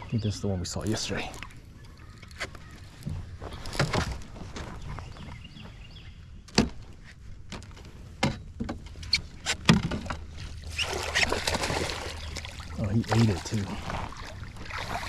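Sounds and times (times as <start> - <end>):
water splashing: 0.8 - 2.4, 10.0 - 15.0
knocks and thuds on kayak: 9.5 - 10.3.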